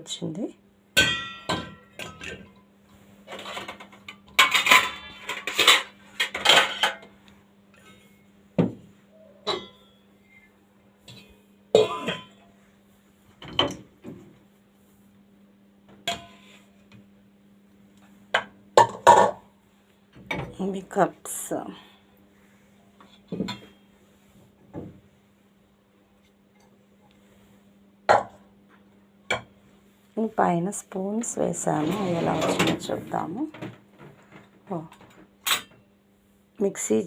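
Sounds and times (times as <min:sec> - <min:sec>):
dishes and pots clinking: 0:01.0 - 0:02.7, 0:03.3 - 0:07.1, 0:07.7 - 0:10.4, 0:11.1 - 0:12.4, 0:16.0 - 0:16.6, 0:23.0 - 0:23.9.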